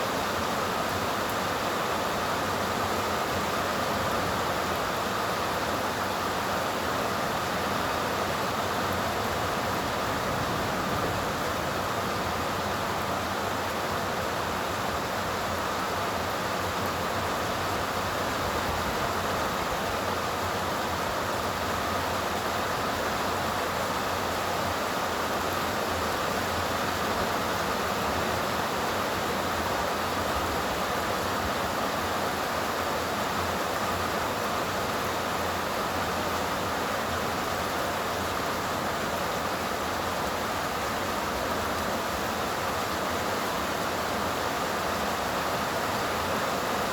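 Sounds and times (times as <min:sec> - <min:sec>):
steady rain falling: 0:00.0 - 0:46.9.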